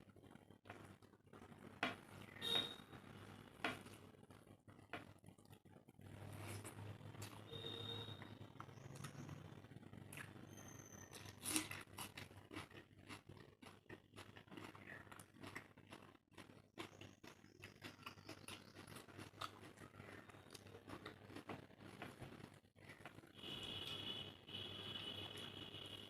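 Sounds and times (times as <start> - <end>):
person chewing food: 3.2 - 24.0
food crunch: 10.0 - 24.0.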